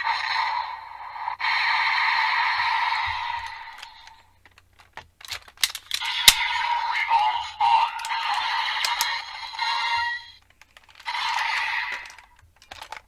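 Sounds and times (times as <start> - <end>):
sharp plastic clicks: 3.1 - 7.0, 7.8 - 9.6, 10.3 - 13.0
electronic toy sound effect: 11.0 - 12.4.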